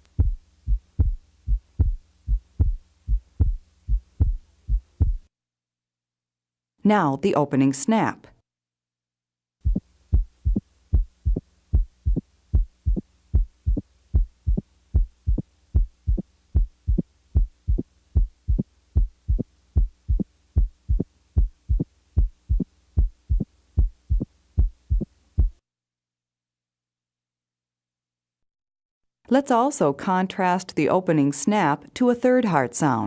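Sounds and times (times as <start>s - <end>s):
heartbeat with sharp snap: 0.0s - 5.3s, 9.6s - 25.6s.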